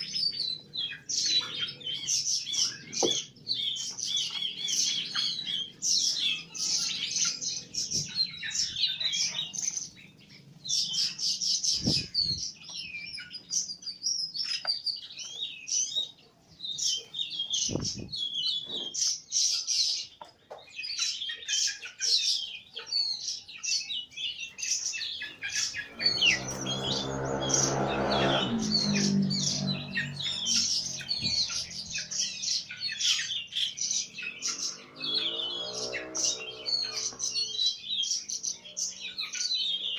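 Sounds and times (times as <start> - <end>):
small birds chirping: 0.0 - 39.9
low pitched hum: 25.7 - 32.1.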